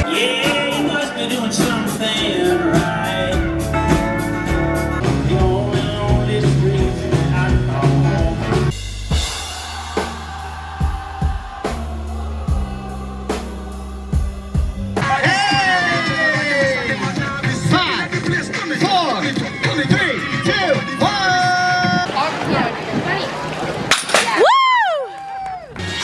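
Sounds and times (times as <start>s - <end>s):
person singing: 0.0s - 8.7s
guitar: 0.0s - 8.8s
drums: 0.0s - 26.0s.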